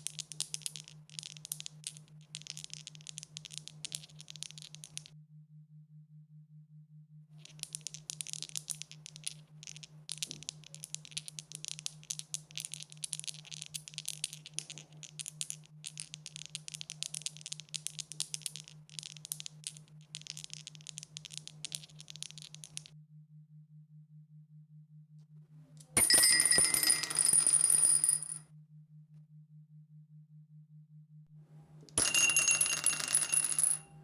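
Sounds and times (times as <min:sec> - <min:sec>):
dice rattling: 0:00.0 - 0:05.1, 0:07.4 - 0:22.9, 0:32.0 - 0:33.9.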